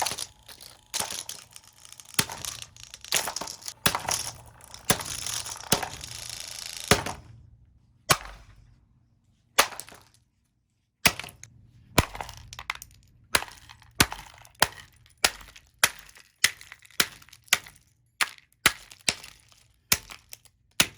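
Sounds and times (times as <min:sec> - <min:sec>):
sharp cracking blows: 0:00.0 - 0:07.3
table fan being smashed: 0:00.0 - 0:07.3.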